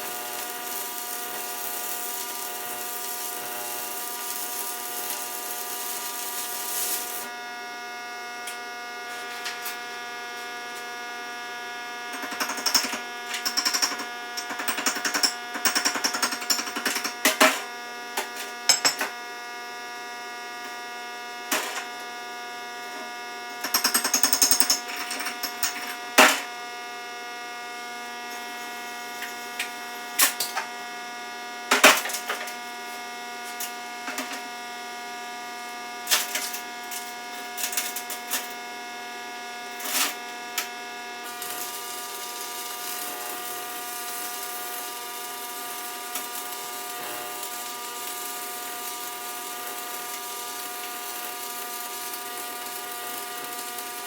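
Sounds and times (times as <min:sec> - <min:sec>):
welding crackle: 0:00.0 - 0:07.4, 0:12.1 - 0:17.5, 0:21.4 - 0:22.2, 0:23.5 - 0:26.7, 0:28.1 - 0:30.8, 0:36.0 - 0:38.6, 0:39.5 - 0:54.0.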